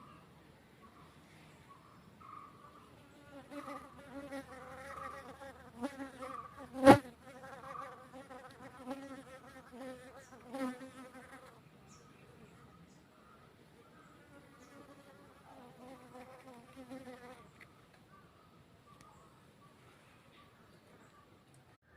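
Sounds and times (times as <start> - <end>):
bee buzzing in flight: 3.0 - 11.5.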